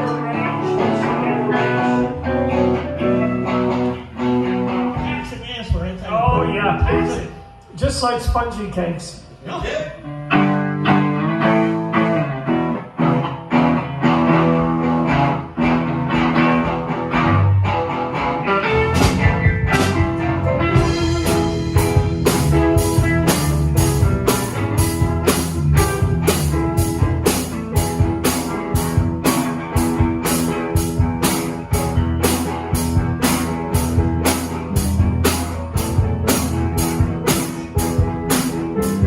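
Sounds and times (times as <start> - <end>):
guitar picking notes: 0.0 - 5.4, 10.0 - 39.0
drum kit steady beat: 4.8 - 9.8, 18.8 - 39.0.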